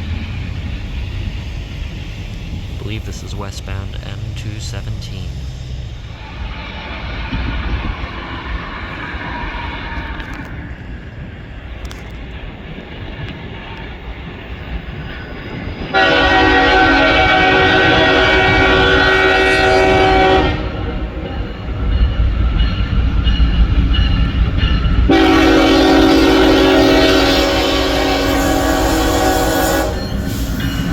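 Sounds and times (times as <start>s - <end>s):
locomotive rumble: 0.0s - 30.9s
locomotive air horn: 15.9s - 21.2s, 25.1s - 30.6s.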